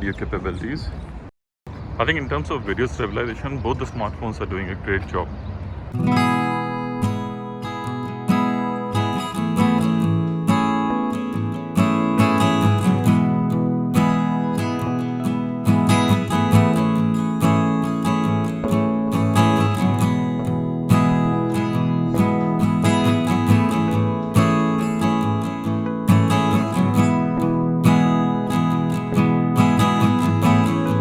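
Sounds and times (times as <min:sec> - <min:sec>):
strummed acoustic guitar: 0:06.0 - 0:31.0.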